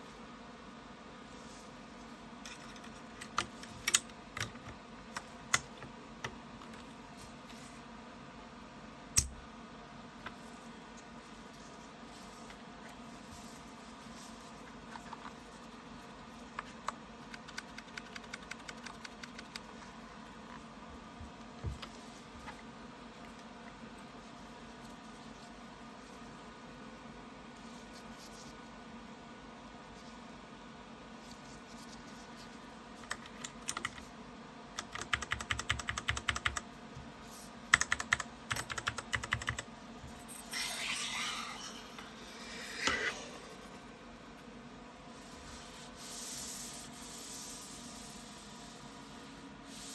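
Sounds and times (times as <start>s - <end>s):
mechanical keyboard keystrokes: 3.2s - 6.8s, 17.3s - 19.7s, 33.1s - 34.0s, 34.8s - 36.6s, 37.7s - 39.7s.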